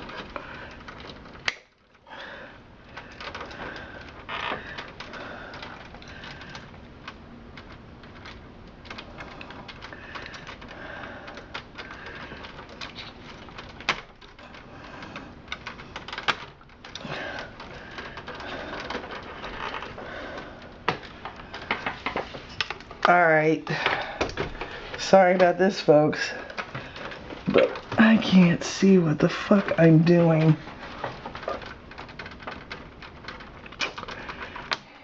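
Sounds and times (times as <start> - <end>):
plastic connectors clicking and snapping: 0.0 - 2.0, 29.2 - 34.9.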